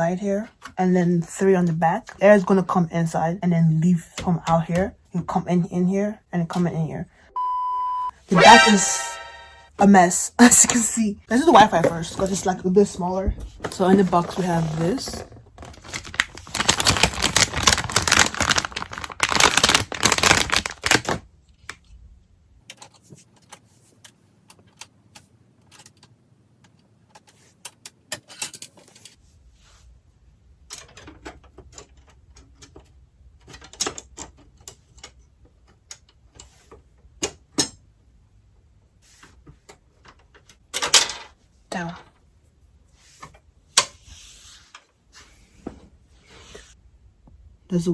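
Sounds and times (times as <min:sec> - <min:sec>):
packaging rustling: 0:13.7 - 0:21.2.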